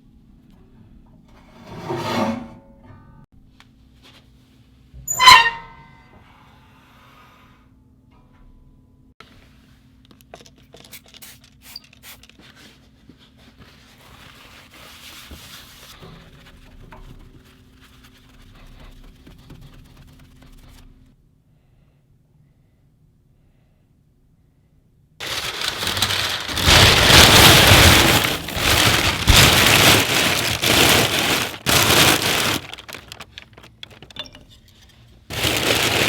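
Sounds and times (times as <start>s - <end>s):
soft rustling: 25.2s - 34.0s.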